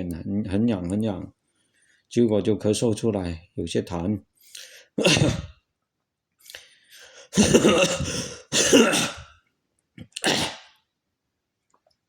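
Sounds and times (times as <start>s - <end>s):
man clearing his throat: 5.0s - 5.5s, 7.3s - 9.3s, 10.0s - 10.7s
man coughing: 5.0s - 5.5s, 7.3s - 9.3s, 10.2s - 10.7s.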